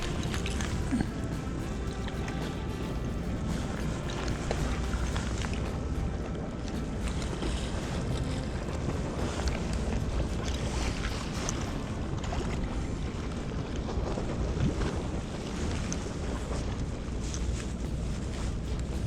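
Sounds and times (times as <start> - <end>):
sea water: 0.0 - 19.0
wind buffeting microphone: 0.0 - 19.0.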